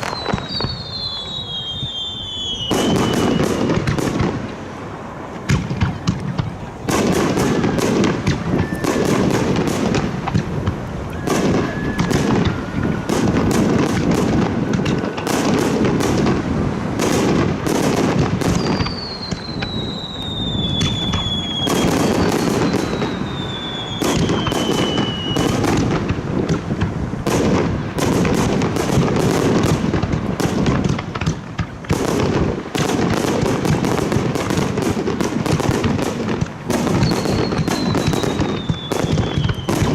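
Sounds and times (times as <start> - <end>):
high falling whistles: 0.0 - 3.6, 8.5 - 9.2, 11.1 - 13.2, 18.5 - 25.5, 37.0 - 39.8
fireworks bursting and crackling: 0.0 - 39.9.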